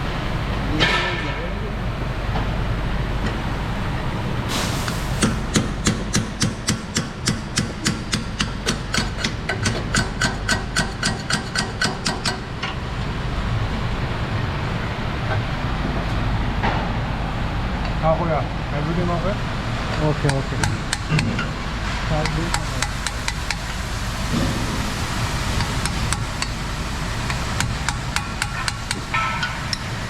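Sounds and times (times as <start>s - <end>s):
low workshop hum: 0.0s - 30.0s
rapid metallic taps: 5.2s - 12.4s, 19.9s - 21.5s, 22.2s - 23.7s, 27.3s - 29.9s.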